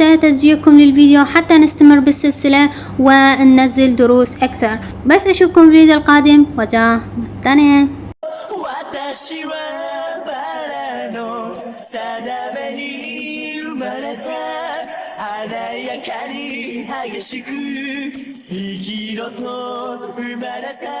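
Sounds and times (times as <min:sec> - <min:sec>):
person singing with vibrato: 0:08.2 - 0:21.0.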